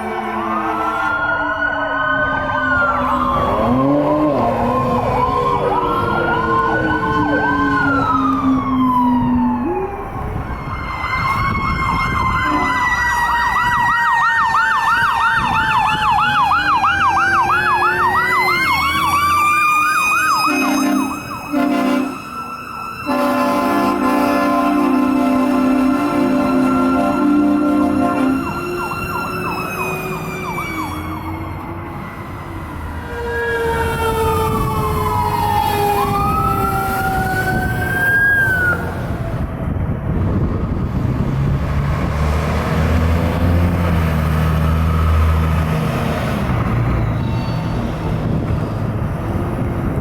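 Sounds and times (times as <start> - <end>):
fire truck air horn: 0.0 - 1.7, 10.6 - 15.6, 16.3 - 39.4
fire truck sirens wailing and yelping: 0.0 - 50.0.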